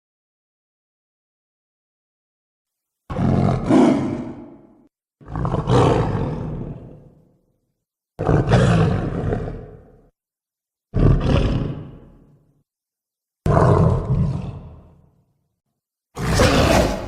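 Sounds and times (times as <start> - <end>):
monster roars: 3.1 - 7.1, 16.2 - 17.0.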